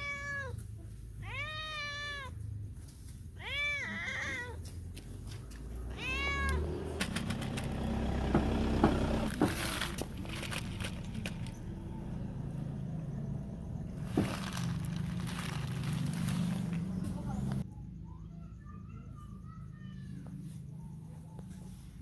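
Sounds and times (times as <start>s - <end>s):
cat meowing: 0.0s - 0.6s, 1.2s - 2.4s, 3.4s - 4.7s, 5.8s - 7.0s
sharp clicks and knocks: 6.5s - 11.6s.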